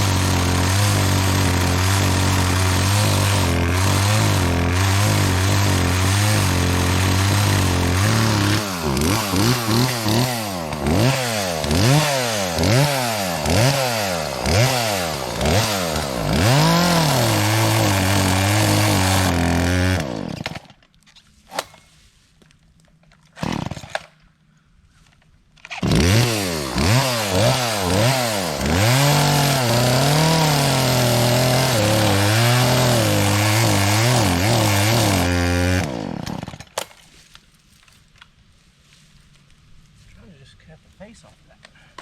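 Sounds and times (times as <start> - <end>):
chainsaw revving: 0.0 - 20.7, 23.4 - 24.1, 25.7 - 36.8.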